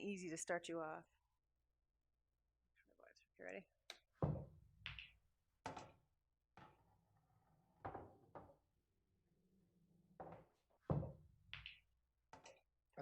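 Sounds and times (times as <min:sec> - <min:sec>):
billiard balls clicking: 0:10.3 - 0:11.8.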